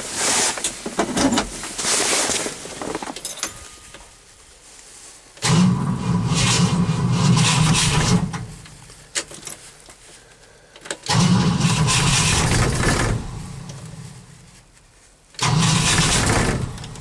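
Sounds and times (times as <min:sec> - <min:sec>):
starter motor cranking engine: 0:05.4 - 0:08.5, 0:11.0 - 0:13.8, 0:15.4 - 0:17.0.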